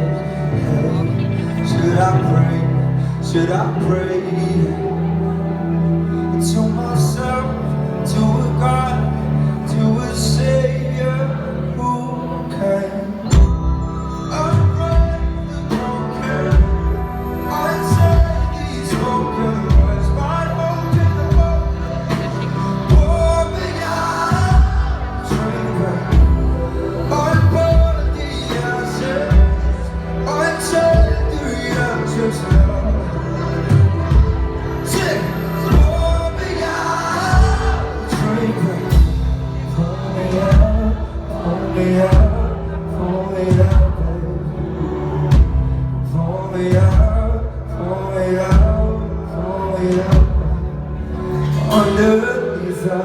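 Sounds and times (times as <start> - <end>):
live pop ballad band: 0.0 - 53.0
steady drum beat: 14.5 - 41.5, 42.1 - 44.4, 45.3 - 46.0, 46.7 - 47.7, 48.5 - 50.8.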